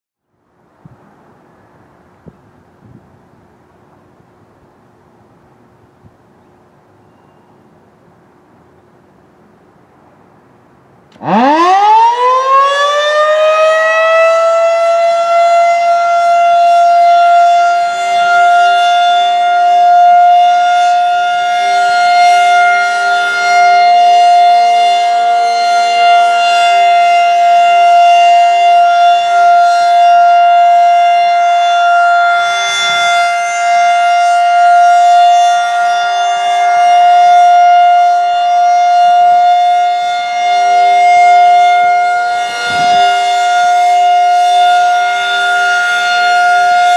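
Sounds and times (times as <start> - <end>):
outdoor warning siren wailing: 11.1 - 46.9.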